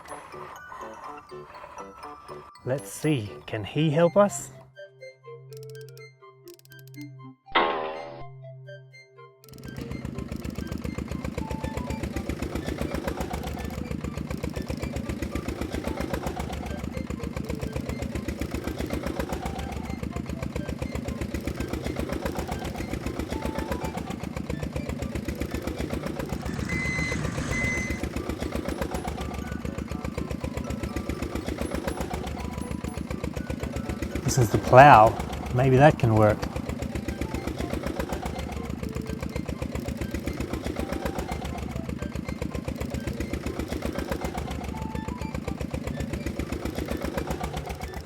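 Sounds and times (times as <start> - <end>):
diesel engine chugging: 9.4 - 48.0
short high beeps: 26.4 - 28.1.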